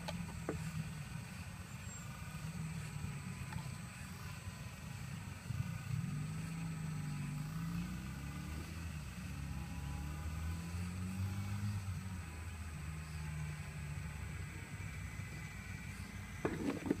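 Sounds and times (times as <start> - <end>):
excavator engine running: 13.6 - 17.0.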